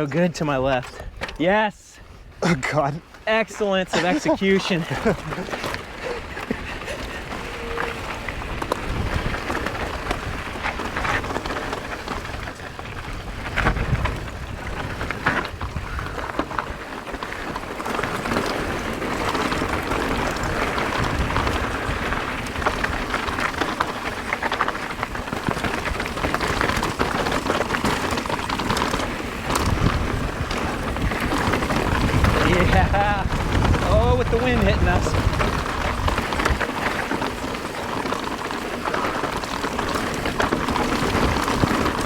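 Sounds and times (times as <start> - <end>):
tyres crunching over dirt and rock: 2.4 - 42.0
bike rattling and knocking: 2.6 - 42.0
wind buffeting microphone: 3.9 - 42.0.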